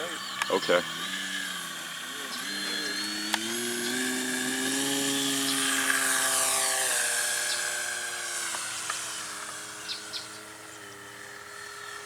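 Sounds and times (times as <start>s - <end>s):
model plane electric motor whining: 0.0s - 12.0s.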